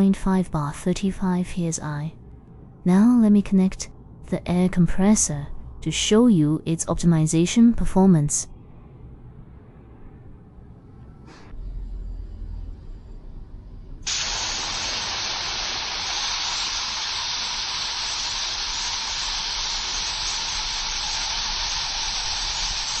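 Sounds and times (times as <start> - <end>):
low hum: 0.0 - 23.0
air spray gun hissing: 14.1 - 23.0.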